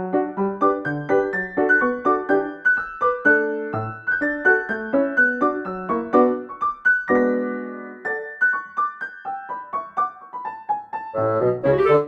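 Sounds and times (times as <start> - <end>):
bouncy piano tune: 0.0 - 12.0.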